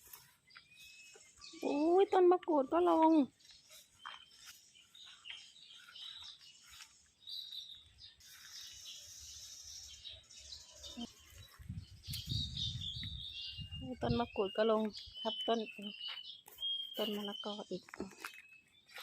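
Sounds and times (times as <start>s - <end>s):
small birds chirping: 0.0s - 19.0s
wind rumble on microphone: 11.3s - 14.5s.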